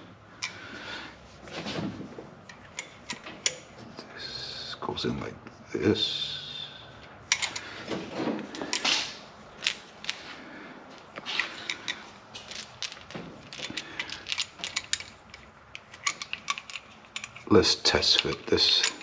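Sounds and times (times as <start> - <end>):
light metallic clicks and clinks: 11.4 - 19.0.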